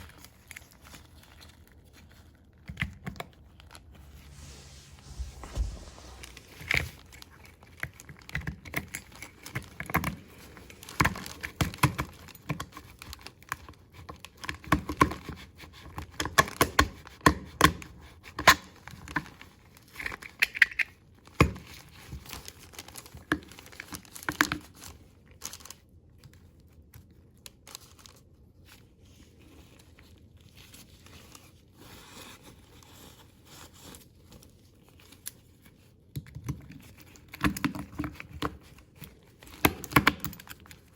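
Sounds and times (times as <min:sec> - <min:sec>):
rustling: 0:03.6 - 0:08.3.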